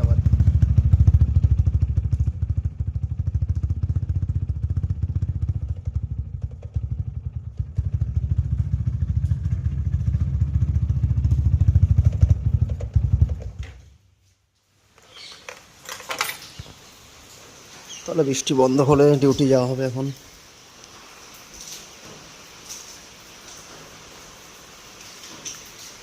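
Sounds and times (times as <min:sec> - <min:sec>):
motorcycle engine idling: 0:00.0 - 0:13.6.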